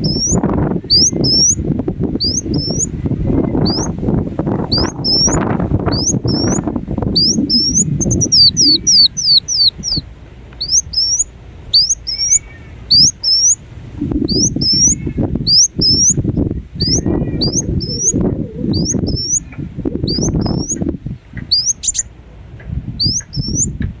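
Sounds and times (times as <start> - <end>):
bird calling in high chirps: 0.0 - 10.0, 10.6 - 22.1, 23.0 - 23.8
low rough noise: 0.0 - 21.3.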